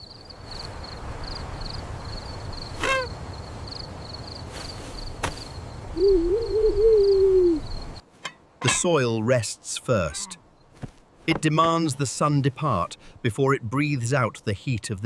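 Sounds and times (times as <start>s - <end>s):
long wavering hoot-like call: 2.8s - 3.2s, 6.0s - 7.8s.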